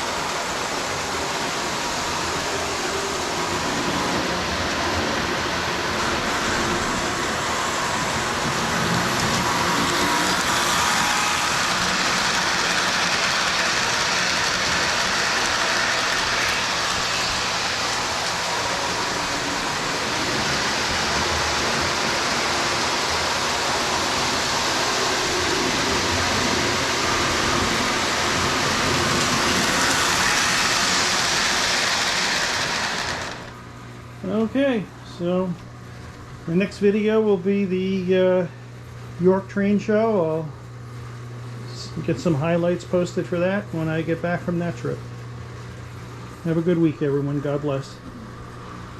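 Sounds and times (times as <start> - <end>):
model train rolling on track: 0.0 - 34.6.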